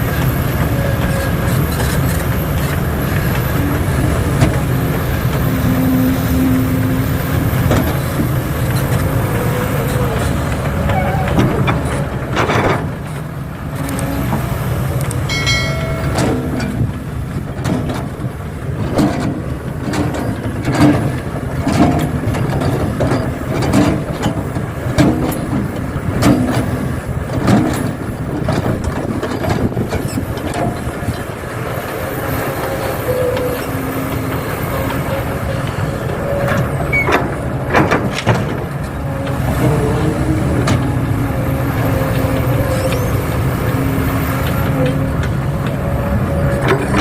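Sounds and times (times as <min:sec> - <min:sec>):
diesel machinery rumbling: 0:00.0 - 0:47.0
metal knocks and clanks: 0:15.3 - 0:31.2.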